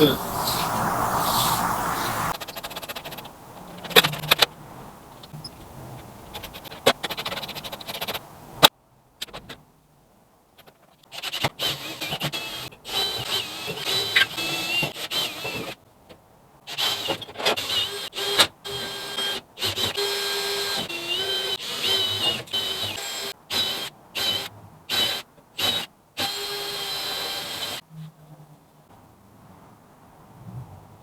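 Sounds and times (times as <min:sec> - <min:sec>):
power drill whining: 0:00.0 - 0:03.3, 0:11.1 - 0:15.8, 0:16.7 - 0:27.8.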